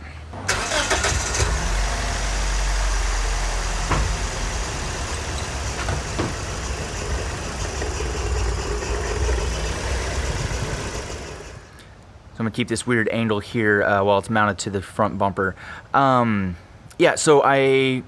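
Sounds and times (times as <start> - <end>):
car engine idling: 0.4 - 12.0
sharp engine ticks: 5.0 - 11.8.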